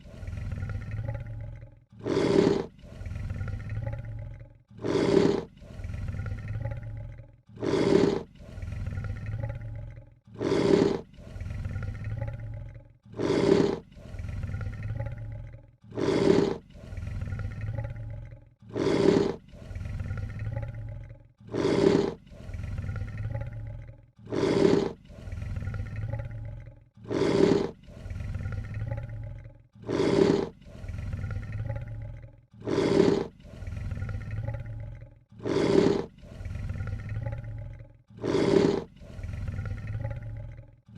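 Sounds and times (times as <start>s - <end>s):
lion hissing: 2.0s - 4.0s, 4.8s - 6.8s, 7.6s - 9.5s, 10.3s - 12.3s, 13.1s - 15.1s, 15.9s - 17.9s, 18.7s - 20.7s, 21.5s - 23.4s, 24.2s - 26.2s, 27.0s - 29.2s, 29.8s - 32.0s, 32.6s - 34.8s, 35.4s - 37.6s, 38.2s - 40.3s.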